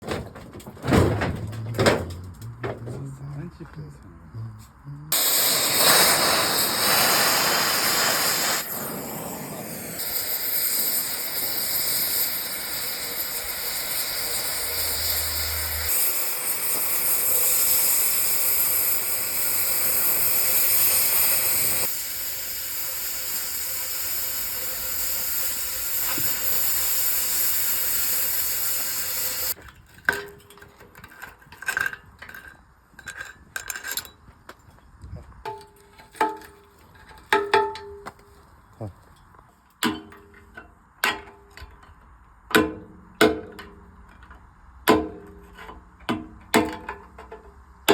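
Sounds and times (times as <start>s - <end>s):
arc welding sizzle: 5.2s - 29.6s.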